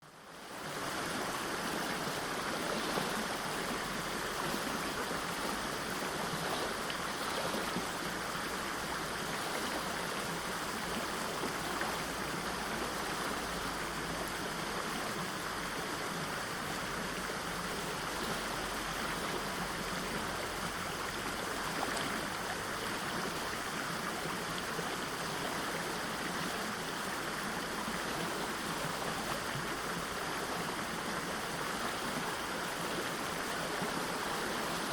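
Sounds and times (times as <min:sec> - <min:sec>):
water rushing over waterfall: 0:00.1 - 0:34.9.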